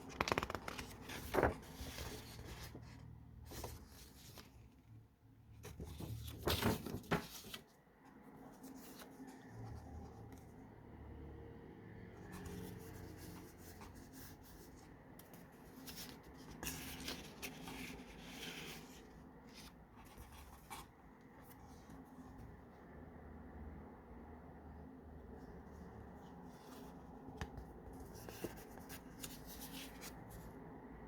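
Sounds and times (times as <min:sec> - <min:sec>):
paper rustling: 0:00.0 - 0:04.9, 0:05.5 - 0:10.6, 0:12.2 - 0:22.4, 0:25.4 - 0:30.6.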